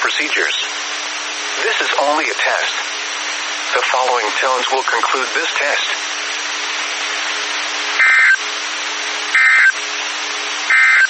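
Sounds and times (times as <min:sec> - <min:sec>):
radio receiver hiss: 0:00.0 - 0:11.0
buzzy digital squawks: 0:08.0 - 0:08.4, 0:09.4 - 0:09.7, 0:10.7 - 0:11.0.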